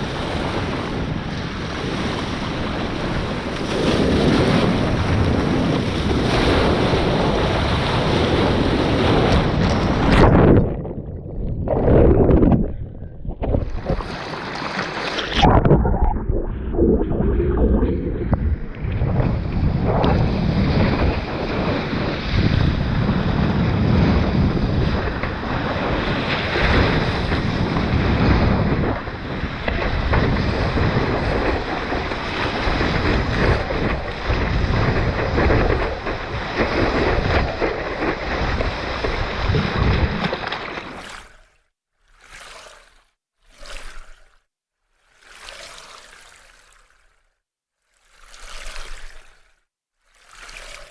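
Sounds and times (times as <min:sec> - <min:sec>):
wind buffeting microphone: 0:00.0 - 0:14.8, 0:15.4 - 0:40.5
ocean water rushing: 0:00.0 - 0:23.0, 0:45.1 - 0:47.2, 0:48.0 - 0:50.9.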